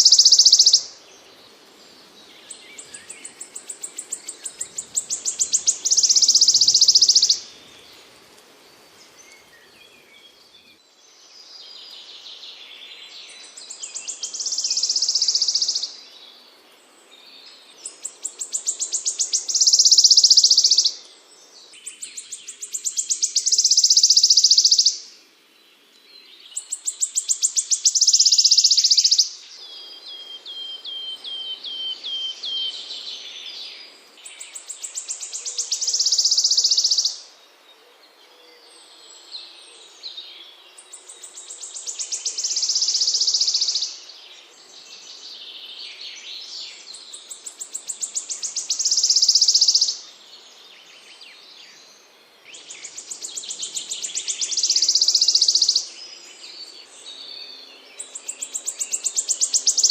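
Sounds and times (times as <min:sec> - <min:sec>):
bird twittering: 0:00.0 - 0:00.9, 0:02.8 - 0:07.4, 0:18.3 - 0:21.0, 0:22.2 - 0:25.0, 0:26.6 - 0:29.3, 0:34.5 - 0:37.2, 0:47.3 - 0:50.0, 0:52.6 - 0:55.9, 0:58.1 - 0:59.9
songbird buzzy trill: 0:00.0 - 0:00.9.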